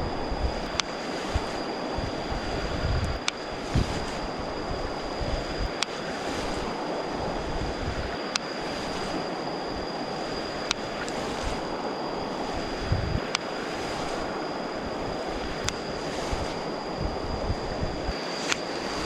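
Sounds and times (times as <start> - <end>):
sharp clicks: 3.0 - 4.1, 15.6 - 15.8.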